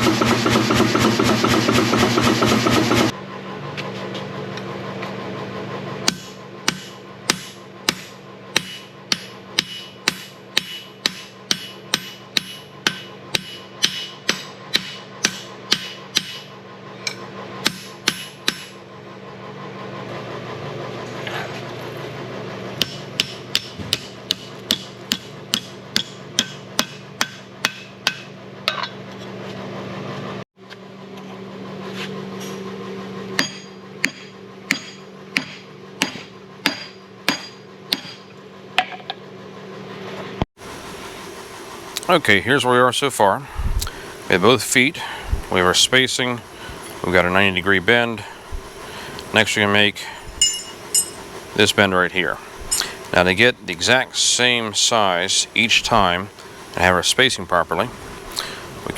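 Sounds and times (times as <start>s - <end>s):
steady low hum: 0.0s - 58.9s
hammer ringing on anvil: 6.1s - 18.7s, 22.8s - 29.0s, 33.4s - 38.3s, 50.4s - 51.3s.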